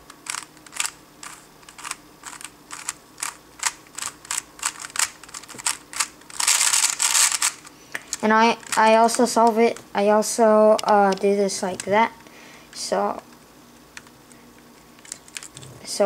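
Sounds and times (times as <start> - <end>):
puzzle cube turns clicking: 0.2 - 9.6, 10.7 - 12.0, 15.0 - 15.7.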